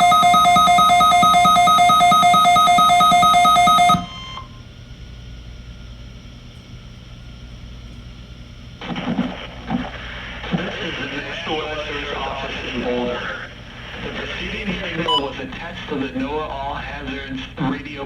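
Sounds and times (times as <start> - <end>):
pulsing two-tone alert beep: 0.0 - 4.1
radio hiss: 8.8 - 18.0.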